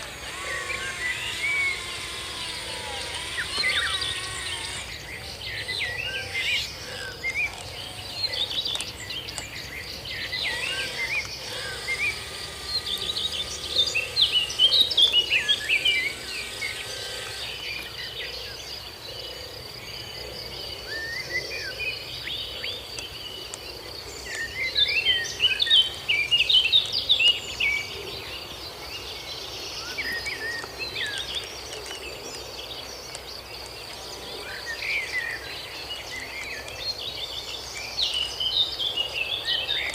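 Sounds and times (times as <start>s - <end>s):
high-pitched insect trill: 0.0s - 6.9s
birds chirping: 0.0s - 39.9s.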